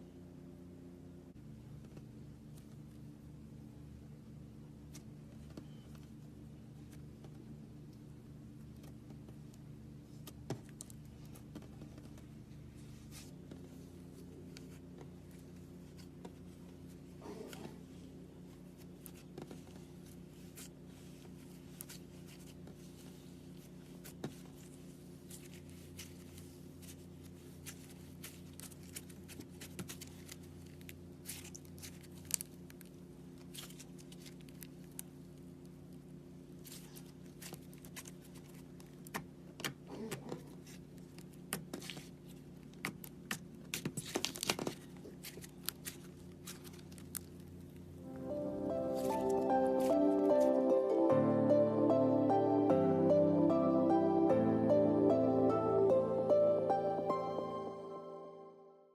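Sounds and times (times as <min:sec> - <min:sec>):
low electrical hum: 0:00.0 - 0:58.9.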